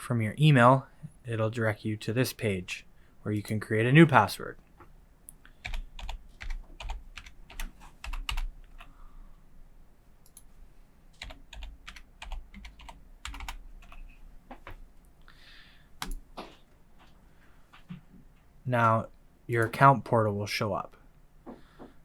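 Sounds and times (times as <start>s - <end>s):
computer keyboard typing: 5.6s - 8.9s, 11.2s - 14.8s, 16.0s - 16.2s.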